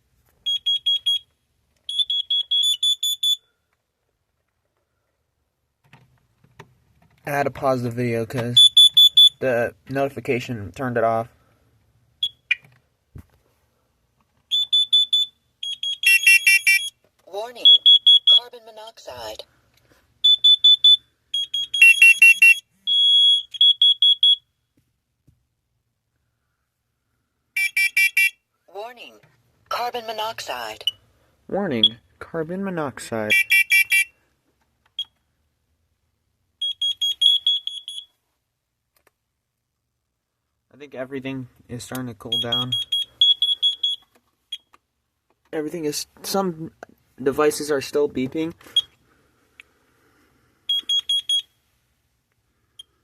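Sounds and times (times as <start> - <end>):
carbon monoxide alarm beeping: 0.4 - 3.6, 8.5 - 9.4, 12.1 - 12.7, 14.5 - 17.0, 17.6 - 18.6, 20.2 - 24.6, 27.6 - 28.4, 33.3 - 34.2, 35.0 - 35.2, 36.6 - 38.2, 42.2 - 44.7, 48.6 - 49.0, 50.2 - 51.8.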